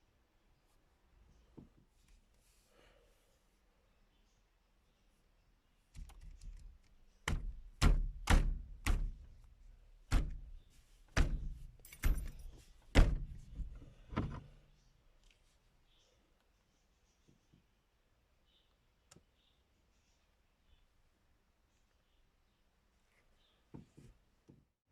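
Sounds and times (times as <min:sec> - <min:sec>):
hard knocks: 0:07.2 - 0:09.4, 0:10.1 - 0:14.4
light clicks and handling noise: 0:11.1 - 0:15.6.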